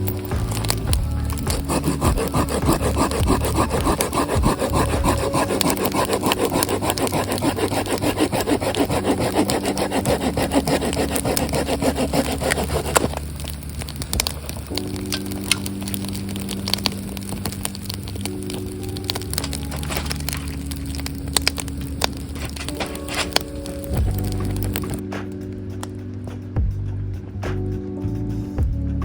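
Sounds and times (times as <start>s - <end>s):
hand saw cutting wood: 0.4s - 14.3s, 24.2s - 25.0s.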